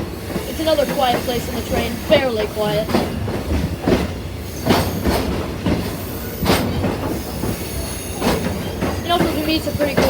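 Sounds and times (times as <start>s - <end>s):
train cars rumbling on track: 0.0s - 10.0s
faint high wheel squeal: 7.1s - 9.1s.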